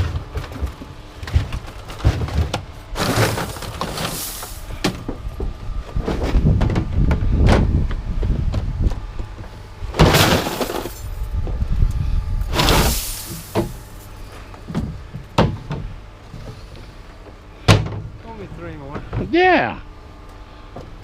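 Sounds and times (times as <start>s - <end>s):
scrap metal clattering onto a pile: 3.0s - 4.8s, 10.0s - 11.1s, 12.6s - 14.1s.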